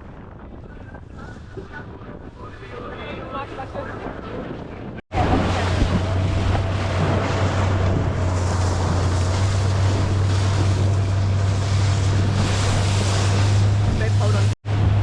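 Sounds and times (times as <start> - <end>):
wind buffeting microphone: 0.0 - 15.0
boat engine running: 5.1 - 15.0
rushing water: 5.1 - 15.0.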